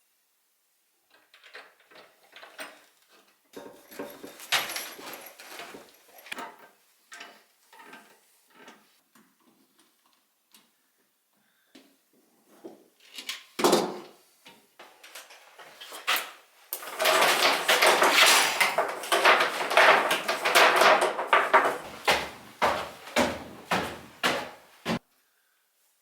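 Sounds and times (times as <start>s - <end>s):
objects knocking and clattering: 3.5s - 6.6s, 16.0s - 25.0s
rapid rattling: 16.8s - 25.0s.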